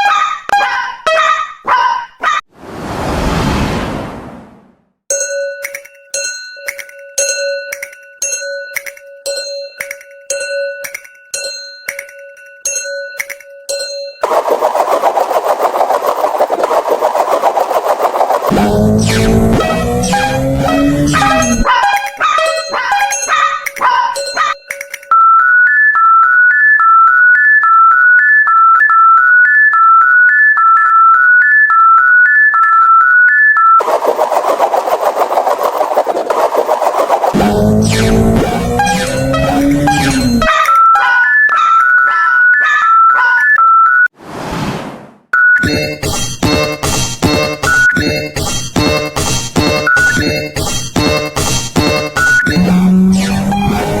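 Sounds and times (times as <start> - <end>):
electronic beeping tune: 18.5 - 23.3, 37.4 - 44.1, 45.4 - 54.0.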